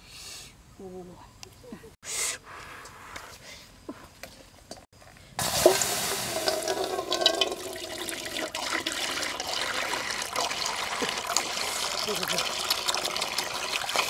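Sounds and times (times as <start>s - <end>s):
water running and sloshing: 5.4s - 14.0s.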